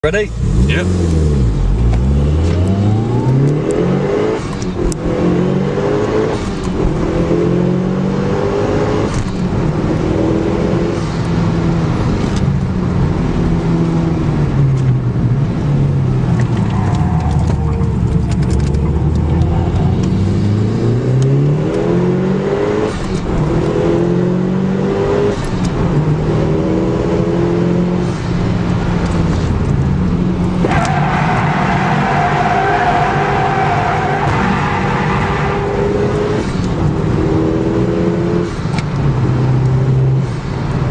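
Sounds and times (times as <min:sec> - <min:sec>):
car engine revving: 0:00.3 - 0:40.9
tyre squeal: 0:30.6 - 0:36.1.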